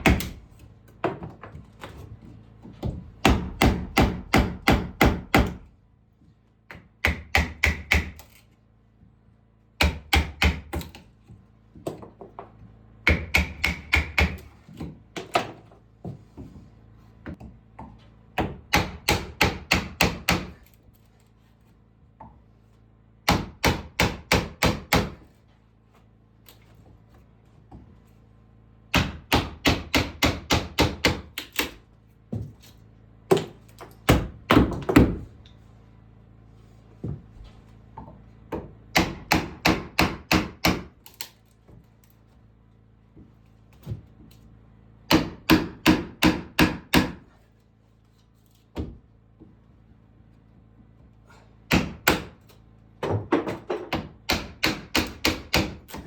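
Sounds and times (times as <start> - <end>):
hammer striking wood: 0.0 - 0.4, 2.8 - 5.7, 6.7 - 8.2, 9.8 - 11.0, 13.0 - 15.5, 18.4 - 20.6, 23.2 - 25.3, 28.9 - 32.5, 33.3 - 35.3, 38.5 - 41.0, 45.1 - 47.3, 51.7 - 52.4, 53.0 - 56.0.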